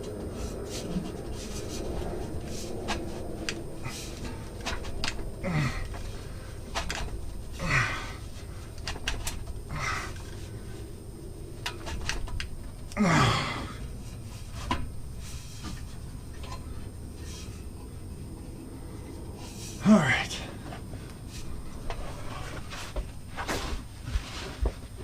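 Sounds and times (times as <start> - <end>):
man grunting with effort: 5.4 - 6.0, 7.5 - 8.3, 9.7 - 10.2, 12.9 - 13.9, 19.8 - 20.6.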